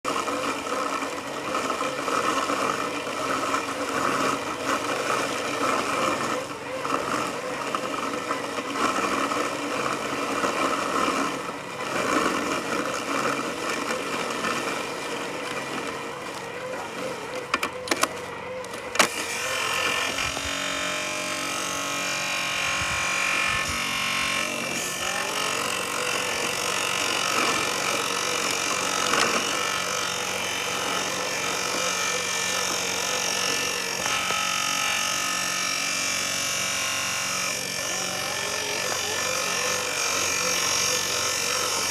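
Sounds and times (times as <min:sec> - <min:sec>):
robotic lawn mower whine: 0:00.0 - 0:41.9.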